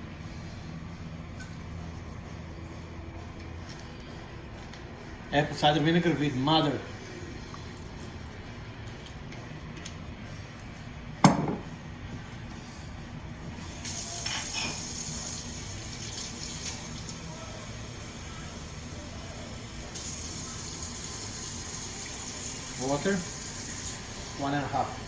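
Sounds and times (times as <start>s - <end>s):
kitchen tap running: 13.6s - 25.0s
water filling a glass: 19.9s - 25.0s.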